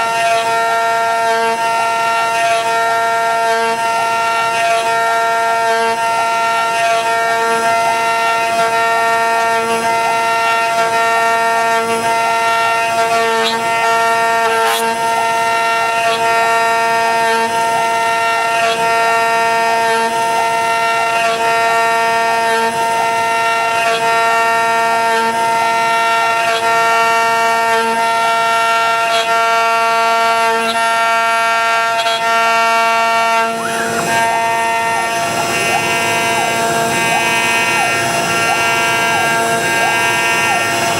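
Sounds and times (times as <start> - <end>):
router spindle whine: 0.0 - 40.9
bit cutting wood ticks: 31.9 - 32.3.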